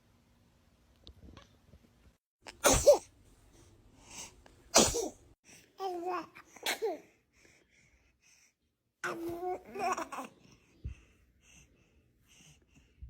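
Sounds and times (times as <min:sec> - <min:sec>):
baby babbling and laughing: 0:05.8 - 0:07.1, 0:09.0 - 0:10.5.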